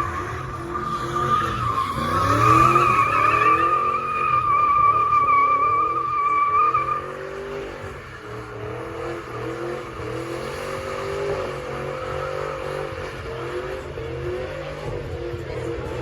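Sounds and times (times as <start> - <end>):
car engine revving: 0.0 - 16.0
tires squealing: 0.0 - 16.0.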